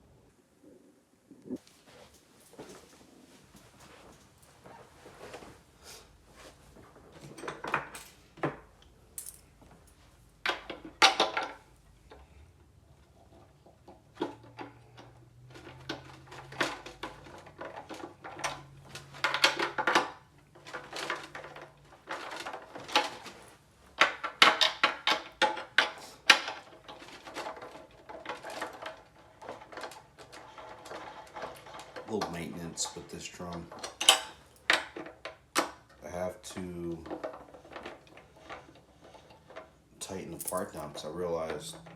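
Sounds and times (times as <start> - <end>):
metal hardware clinking: 7.2 - 8.3, 9.2 - 10.0, 38.4 - 41.7.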